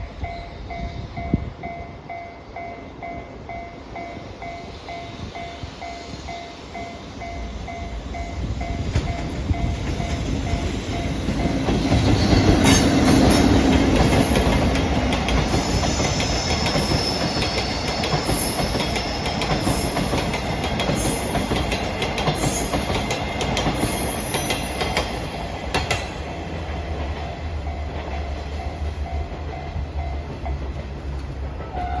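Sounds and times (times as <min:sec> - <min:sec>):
crossing warning bell ringing: 0:00.0 - 0:26.3, 0:27.6 - 0:31.0
train wheels clattering over rail joints: 0:08.2 - 0:31.7
wheel squeal: 0:15.5 - 0:20.0.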